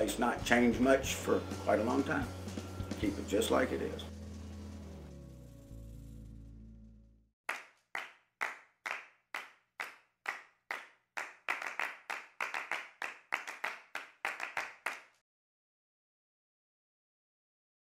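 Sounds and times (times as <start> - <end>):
hand clapping: 7.5 - 15.2.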